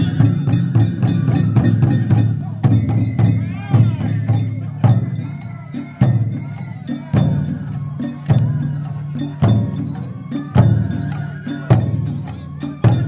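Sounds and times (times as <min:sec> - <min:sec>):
heavy drum booming: 0:00.0 - 0:05.4.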